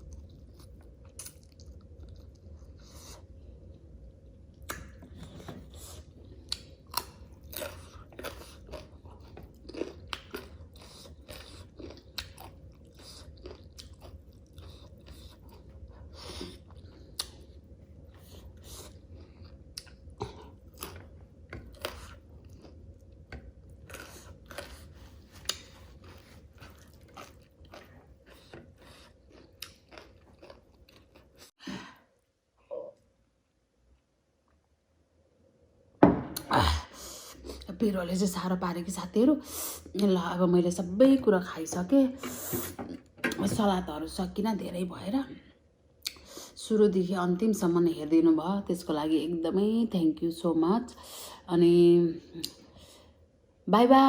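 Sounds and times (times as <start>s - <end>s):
person chewing food: 0.0s - 31.6s.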